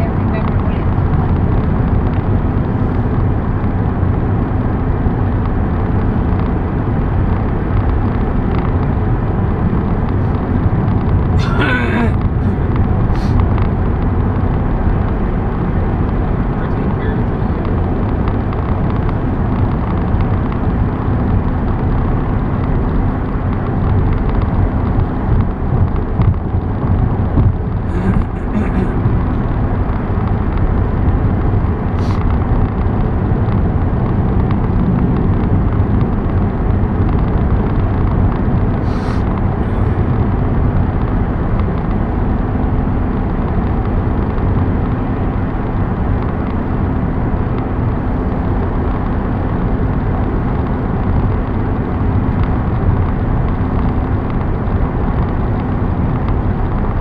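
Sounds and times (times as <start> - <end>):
car driving road noise: 0.0 - 57.0.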